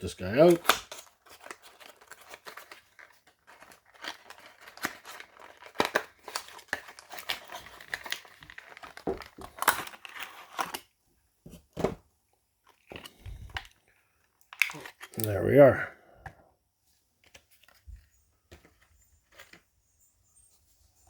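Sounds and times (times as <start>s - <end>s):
plastic packaging crinkling: 0.3s - 10.8s, 12.7s - 15.5s.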